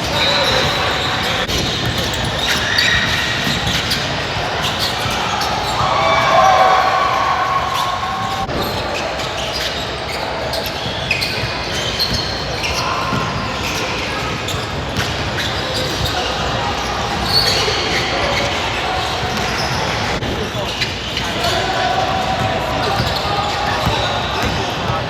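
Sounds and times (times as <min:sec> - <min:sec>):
shoe squeaks: 0:00.0 - 0:06.6, 0:07.7 - 0:25.0
echoing crowd voices: 0:00.0 - 0:25.0
basketball bouncing on court: 0:00.1 - 0:06.4, 0:10.8 - 0:13.8, 0:14.5 - 0:17.3, 0:22.4 - 0:25.0.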